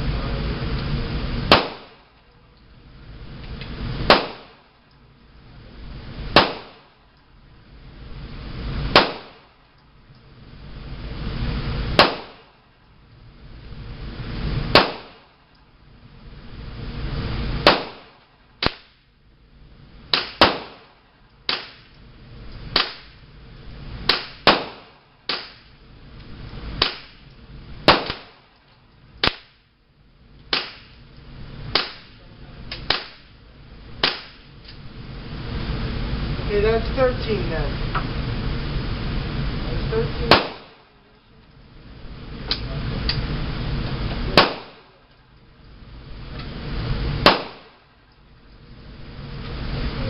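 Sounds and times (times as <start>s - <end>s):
sharp gunshots: 1.5s - 2.1s, 4.0s - 4.7s, 6.3s - 6.9s, 8.9s - 9.5s, 11.9s - 12.6s, 14.7s - 15.3s, 17.6s - 19.0s, 20.1s - 21.9s, 22.7s - 23.2s, 24.1s - 25.7s, 26.8s - 27.2s, 27.8s - 28.5s, 29.2s - 29.6s, 30.5s - 31.0s, 31.7s - 32.2s, 32.8s - 33.3s, 34.0s - 34.5s, 40.2s - 40.9s, 44.3s - 45.0s, 47.2s - 47.8s.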